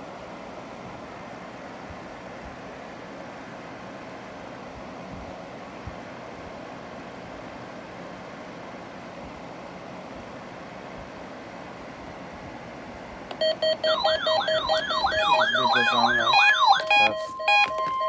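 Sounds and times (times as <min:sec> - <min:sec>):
wavering electronic alert tone: 0:13.4 - 0:18.0.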